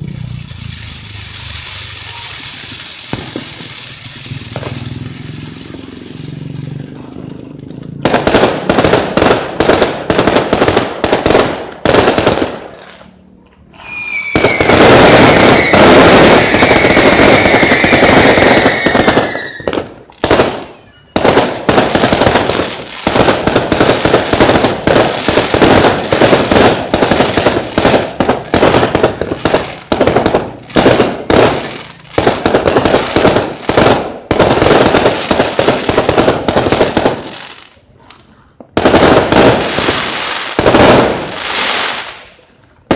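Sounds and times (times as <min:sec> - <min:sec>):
firework hiss and falling whistle: 0:00.0 - 0:06.8, 0:13.6 - 0:23.5
fireworks bangs and crackles: 0:00.0 - 0:42.9.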